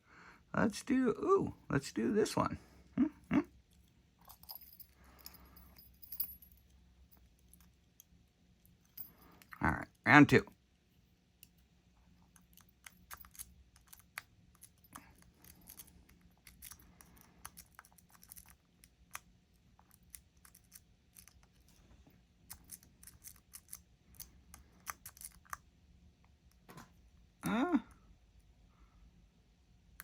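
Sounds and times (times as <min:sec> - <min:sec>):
lock pick clicking and scraping: 0:12.2 - 0:21.7, 0:22.5 - 0:25.6.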